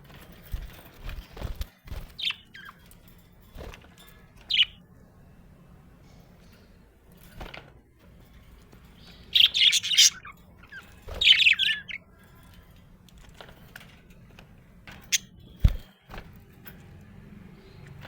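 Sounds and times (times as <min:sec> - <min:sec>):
budgerigars chirping: 0:04.5 - 0:04.8, 0:08.9 - 0:12.1.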